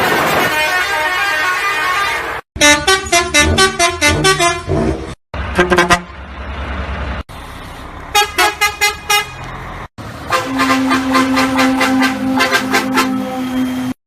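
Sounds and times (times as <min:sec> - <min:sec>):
musical vehicle horns playing tunes: 0:00.5 - 0:06.2, 0:08.1 - 0:09.4, 0:10.3 - 0:14.0
steady horn tone: 0:00.5 - 0:06.2, 0:10.3 - 0:14.0
traffic rumble: 0:02.2 - 0:14.0.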